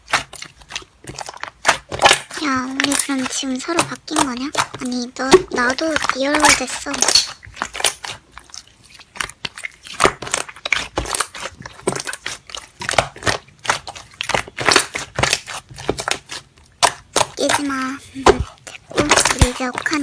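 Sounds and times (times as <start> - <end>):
slime squeezed by hand crackling: 0.0 - 20.0.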